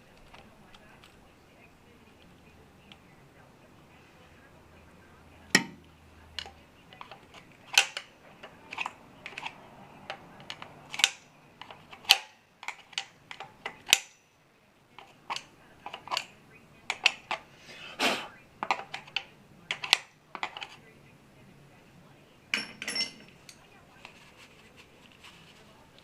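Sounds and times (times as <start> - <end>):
metal tools clicking and clinking: 6.4 - 8.1, 8.7 - 14.2, 22.5 - 23.7.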